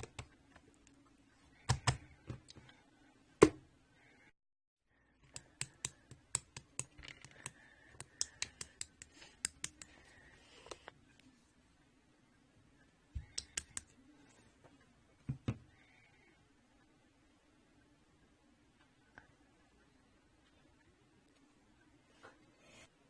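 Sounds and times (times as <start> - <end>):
sharp clicks and taps: 5.3 - 10.0, 13.2 - 13.9.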